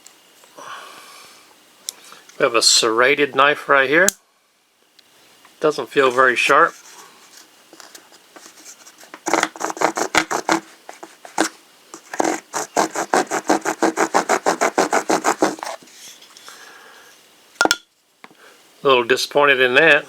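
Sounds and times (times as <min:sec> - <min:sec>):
serrated blade sawing wood: 0:12.2 - 0:15.8.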